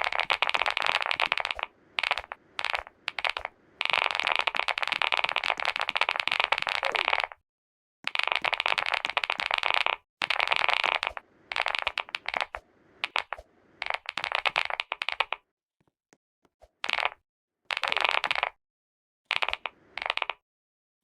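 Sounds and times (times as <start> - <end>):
fast typing on keyboard: 0.0 - 7.3, 8.1 - 15.4, 19.3 - 20.4.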